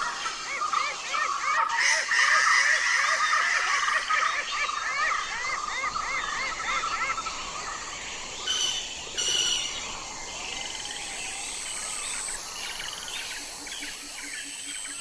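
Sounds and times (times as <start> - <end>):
birds chirping: 0.0 - 15.0
background hiss: 5.2 - 15.0.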